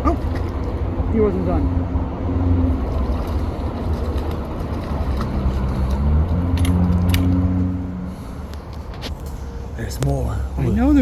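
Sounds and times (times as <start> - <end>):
motor engine rumbling: 0.0 - 11.0.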